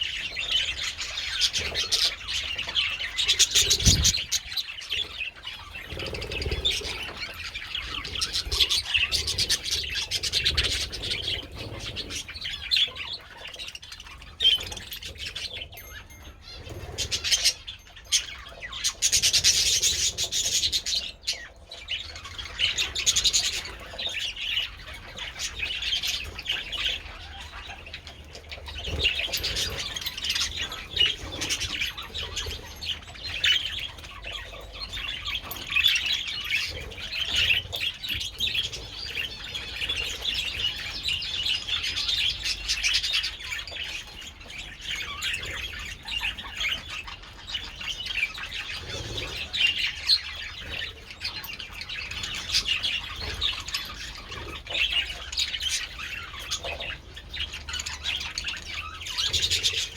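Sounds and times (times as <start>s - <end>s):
budgerigars chattering and chirping: 0.0s - 59.9s.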